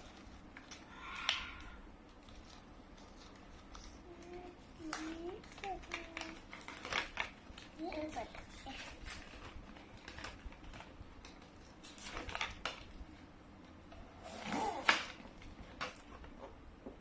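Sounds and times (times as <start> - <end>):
plastic toys clicking and tapping: 0.0 - 12.9.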